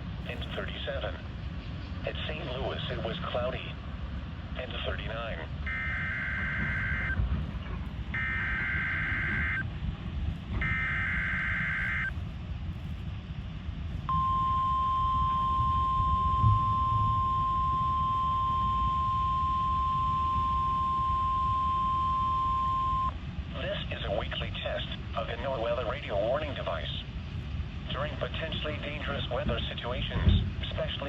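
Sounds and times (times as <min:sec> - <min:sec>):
steady alarm tone: 0:05.7 - 0:07.2, 0:08.1 - 0:09.7, 0:10.6 - 0:12.1, 0:14.1 - 0:23.2
warbling data bursts: 0:05.7 - 0:07.2, 0:08.2 - 0:09.6, 0:10.6 - 0:12.1.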